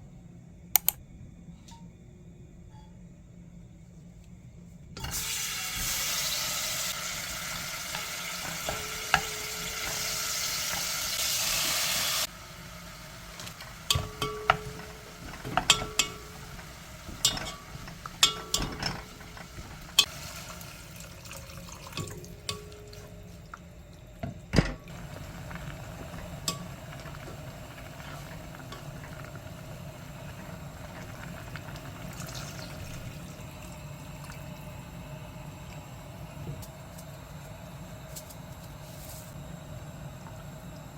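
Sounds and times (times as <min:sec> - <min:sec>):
food frying in a pan: 0:05.0 - 0:24.0, 0:24.9 - 0:40.9
utensil clinking against dishes: 0:07.4 - 0:11.0, 0:13.6 - 0:20.1, 0:21.8 - 0:23.0.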